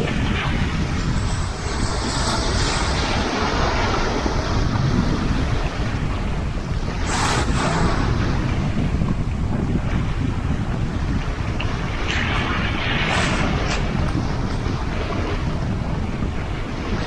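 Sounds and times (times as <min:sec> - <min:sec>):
breaking wave splash: 0:00.0 - 0:06.1, 0:06.8 - 0:10.5
sea waves washing on shore: 0:00.0 - 0:17.0
wind buffeting microphone: 0:00.0 - 0:17.0.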